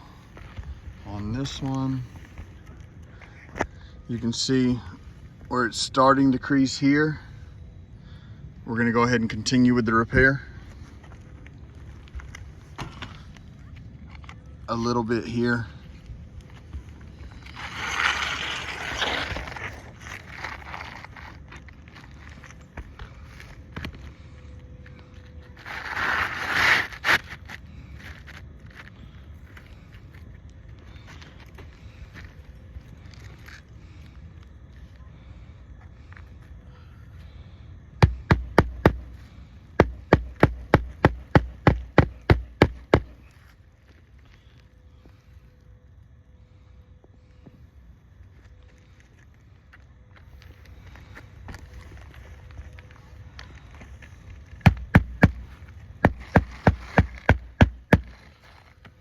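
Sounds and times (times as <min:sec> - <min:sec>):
scraping against roof shingles: 0:17.3 - 0:22.4, 0:54.7 - 0:58.9.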